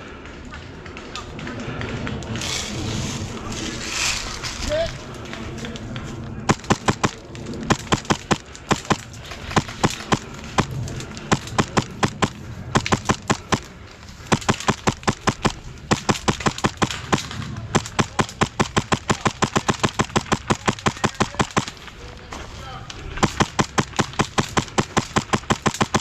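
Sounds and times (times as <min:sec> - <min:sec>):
airsoft guns firing: 0:06.4 - 0:22.2, 0:23.2 - 0:26.0.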